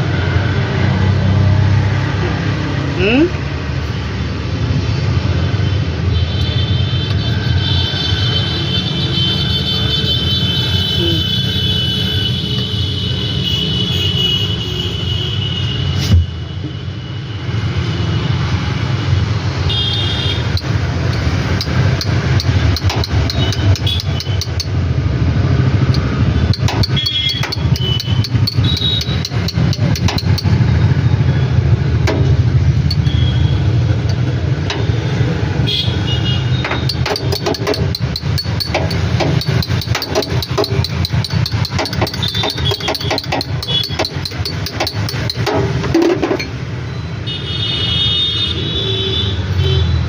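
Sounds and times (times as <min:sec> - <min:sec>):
auto rickshaw engine running: 0:18.7 - 0:46.9.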